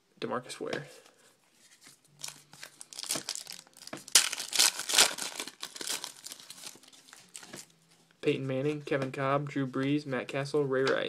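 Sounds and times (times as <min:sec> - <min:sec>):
wrapper crinkling and tearing: 0:01.7 - 0:07.7.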